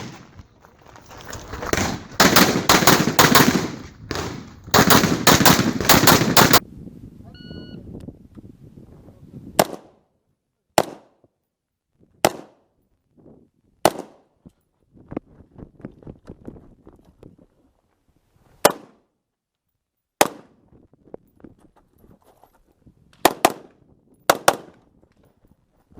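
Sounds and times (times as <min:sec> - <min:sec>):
rifle shots: 0:00.0 - 0:00.3, 0:01.6 - 0:06.6, 0:24.3 - 0:24.8.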